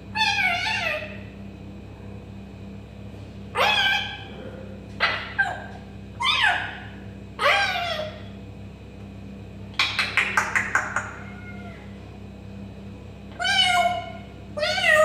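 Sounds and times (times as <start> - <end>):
parrot meowing like a cat: 0.2 - 1.3, 3.6 - 4.3, 5.0 - 8.3, 10.9 - 12.1, 13.3 - 15.0.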